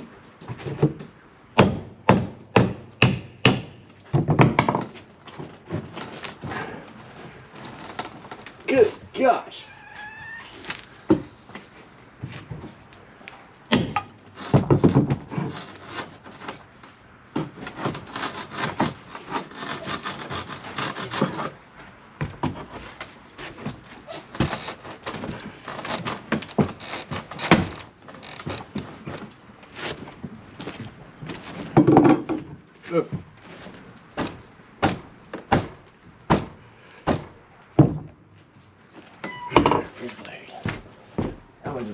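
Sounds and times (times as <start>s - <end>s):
wood knocking and thunking: 0.4s - 9.1s, 10.8s - 12.8s, 13.7s - 16.7s, 22.1s - 38.2s, 38.9s - 40.0s, 40.6s - 41.5s
wood scraping: 3.8s - 37.4s.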